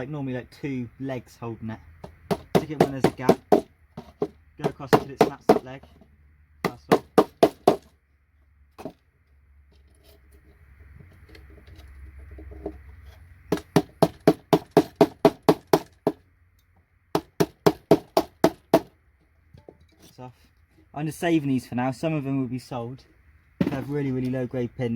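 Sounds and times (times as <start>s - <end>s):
hammer knocking on scraper: 2.0s - 5.8s, 6.6s - 7.9s, 13.5s - 16.2s.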